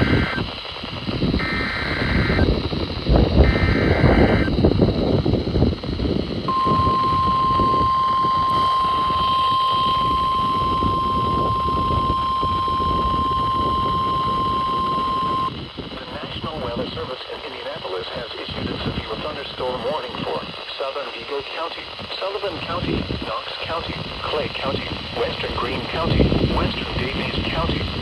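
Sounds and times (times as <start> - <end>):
steady alarm tone: 0.0 - 0.4, 1.4 - 5.3, 6.5 - 15.5
warbling two-tone data burst: 0.0 - 0.4, 1.4 - 4.9, 6.5 - 15.5
heavy radio static: 0.0 - 5.8, 6.5 - 28.0.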